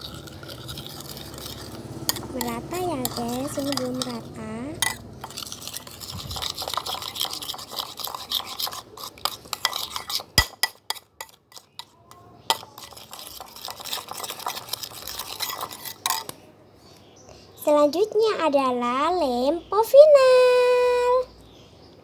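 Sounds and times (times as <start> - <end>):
spoon stirring liquid in bowl: 0.0 - 16.4.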